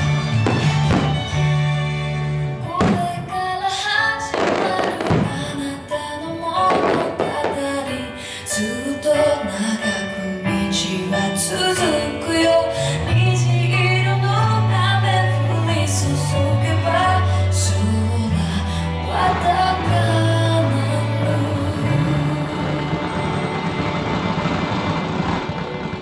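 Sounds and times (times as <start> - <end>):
sustained bass line: 0.0 - 3.2, 12.9 - 26.0
woman singing: 2.6 - 23.4.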